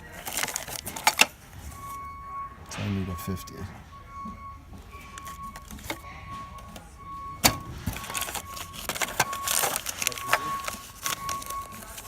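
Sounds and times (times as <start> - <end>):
sharp knock: 2.7 - 3.6.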